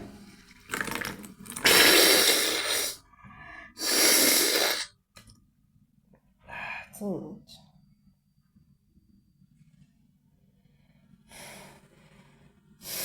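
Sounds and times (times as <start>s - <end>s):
person blowing nose: 1.6s - 3.0s, 3.8s - 4.9s.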